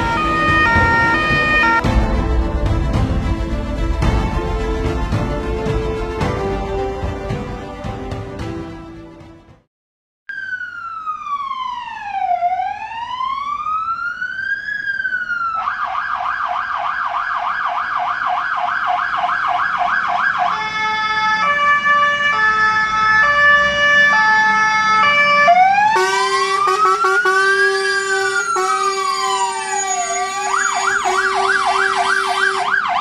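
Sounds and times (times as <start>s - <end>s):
fire engine siren: 0.0s - 2.4s, 10.3s - 33.0s.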